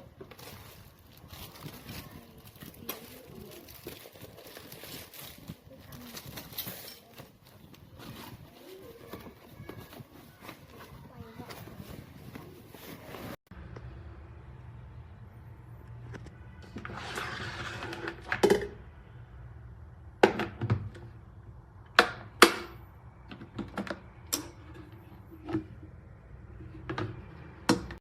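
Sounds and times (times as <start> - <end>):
rustling noise: 0.0 - 13.5.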